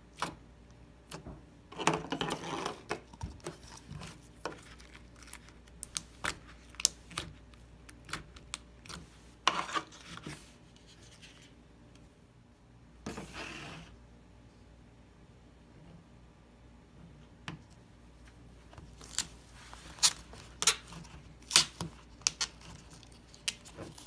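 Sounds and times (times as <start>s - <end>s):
slime squishing rustle: 3.3s - 11.5s, 18.6s - 24.0s.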